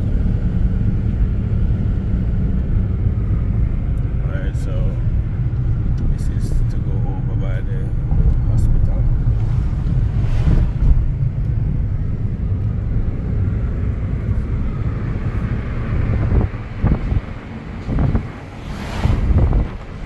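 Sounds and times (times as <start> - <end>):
car engine and tyre rumble: 0.0 - 20.0
wind hiss: 15.5 - 20.0.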